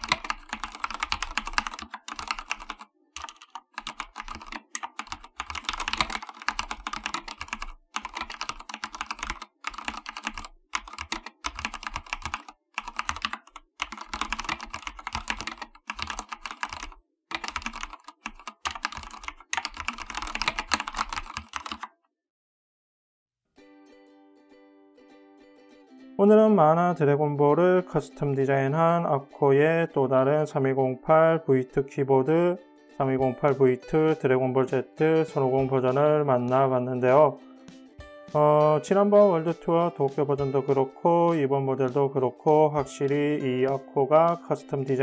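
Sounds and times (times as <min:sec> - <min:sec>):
mechanical keyboard typing: 0:00.0 - 0:22.0.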